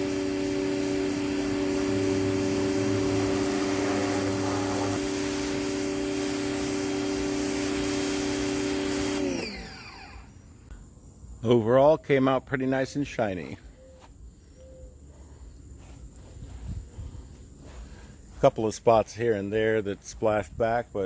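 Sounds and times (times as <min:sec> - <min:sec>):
water spray hissing: 0:00.0 - 0:09.4
pressure washer motor humming: 0:00.0 - 0:10.4.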